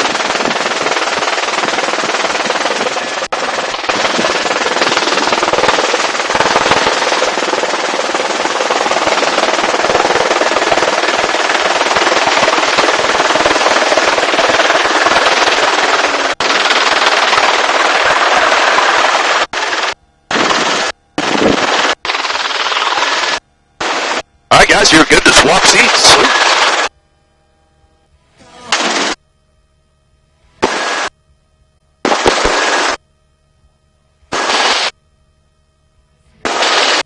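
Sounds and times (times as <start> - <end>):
helicopter rotor and engine: 0.0 - 26.9.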